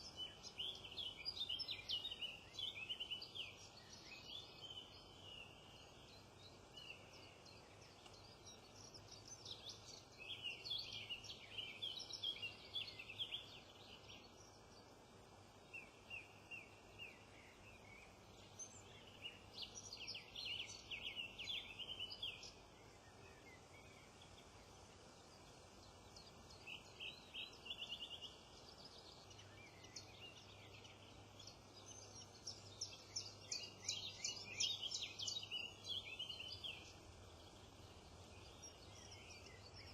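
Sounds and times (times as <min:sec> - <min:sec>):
faint background hiss: 0:00.0 - 0:39.9
songbirds chirping: 0:00.0 - 0:39.9.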